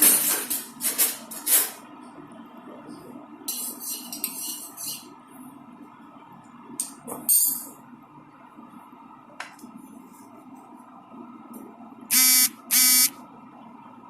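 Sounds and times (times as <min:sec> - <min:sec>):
loud electronic buzzer: 0:12.1 - 0:13.2.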